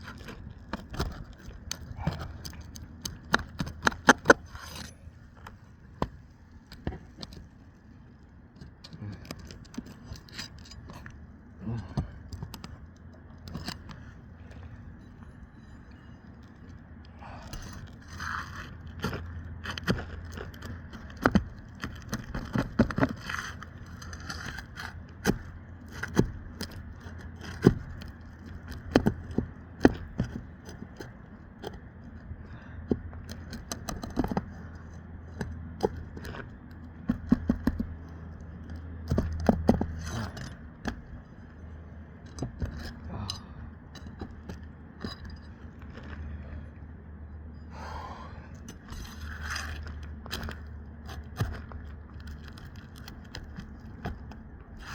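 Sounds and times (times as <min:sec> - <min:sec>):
metallic clicks and scrapes of tools: 0:00.0 - 0:05.6, 0:08.6 - 0:11.2.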